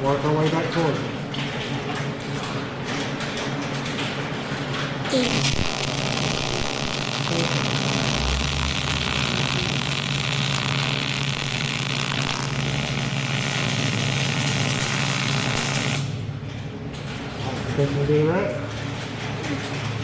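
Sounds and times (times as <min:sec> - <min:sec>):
welding arc hissing: 0:05.1 - 0:16.1.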